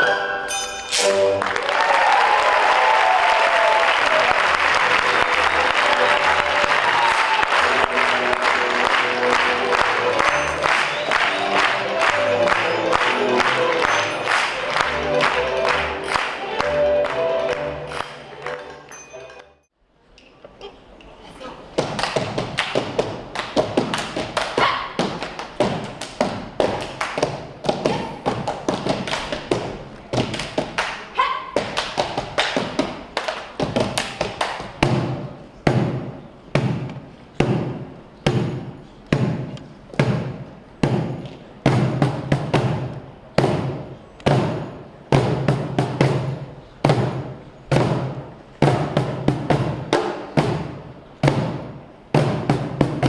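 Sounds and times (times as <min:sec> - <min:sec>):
music: 0:00.0 - 0:01.7, 0:04.4 - 0:19.7
tap shoes on stage floor: 0:21.8 - 0:36.0.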